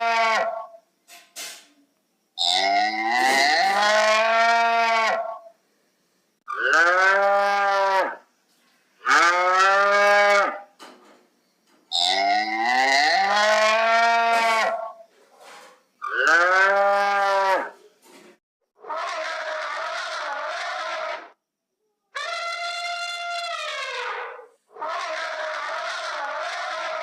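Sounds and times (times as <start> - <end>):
cattle mooing: 16.1 - 17.8.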